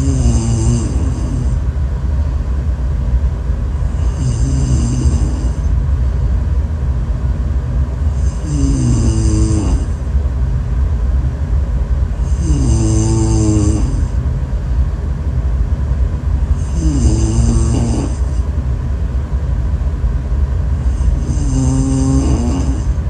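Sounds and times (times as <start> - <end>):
constant low rumble: 0.0 - 23.0
person snoring with whistling edge: 4.0 - 5.6, 8.3 - 9.9, 16.6 - 18.3, 21.0 - 22.9.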